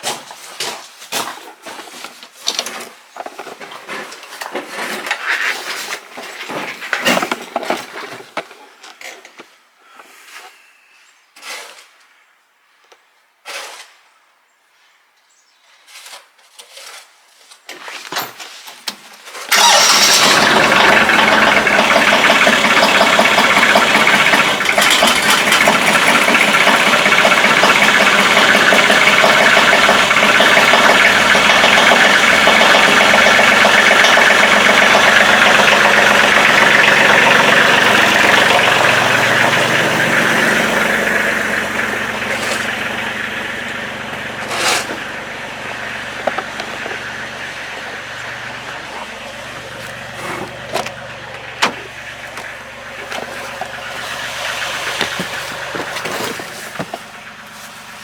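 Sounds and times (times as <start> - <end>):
tractor diesel engine running: 19.5 - 58.0
knocks and clatter: 20.3 - 57.3.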